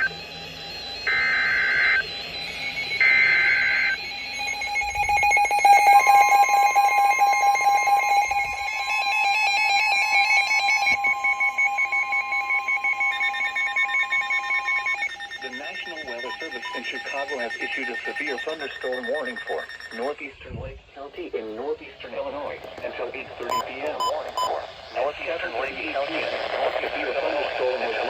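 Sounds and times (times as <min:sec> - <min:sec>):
pulsing alarm beeps: 0:00.0 - 0:20.7, 0:22.8 - 0:28.0
buzzy data bursts: 0:00.0 - 0:21.0
long steady warning tone: 0:00.0 - 0:28.0.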